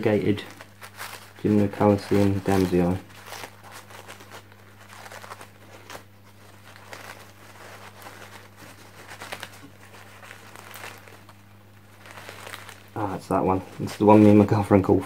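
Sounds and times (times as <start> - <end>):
low electrical hum: 0.0 - 15.0
packaging crinkling: 0.0 - 15.0.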